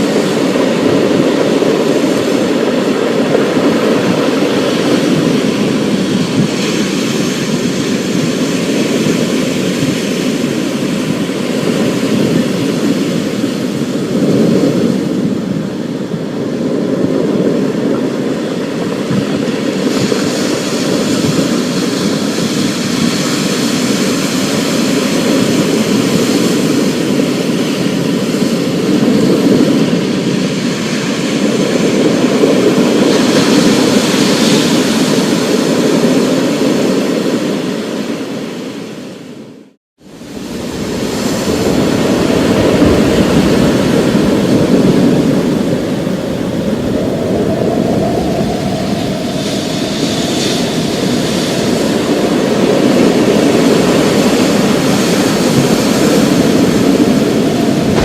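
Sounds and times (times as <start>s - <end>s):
rain and storm rumble: 40.0s - 58.0s.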